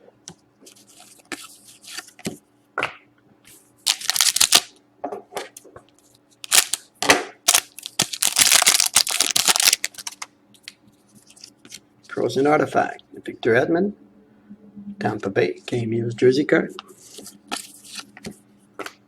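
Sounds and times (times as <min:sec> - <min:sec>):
wrappers tearing and crinkling: 0:03.9 - 0:04.7, 0:06.4 - 0:10.2.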